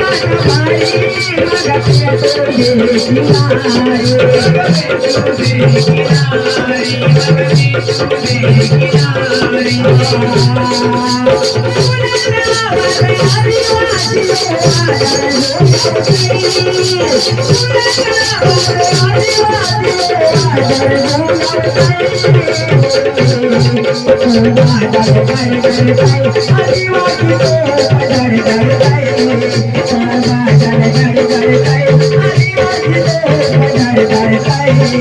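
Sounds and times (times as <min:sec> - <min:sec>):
fast percussion beat: 0:00.0 - 0:35.0
rattling shaker: 0:00.0 - 0:35.0.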